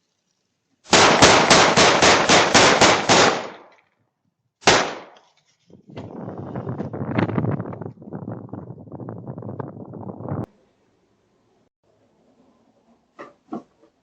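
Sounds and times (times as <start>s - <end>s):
rapid echoing gunshots: 0.9s - 3.7s, 4.6s - 5.2s.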